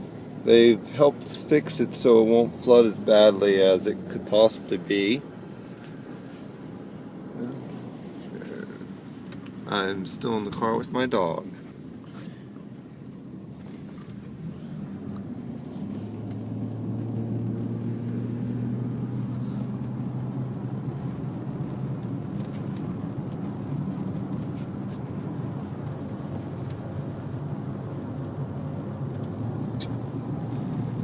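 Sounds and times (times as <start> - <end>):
car engine and road hum: 0.0 - 31.0.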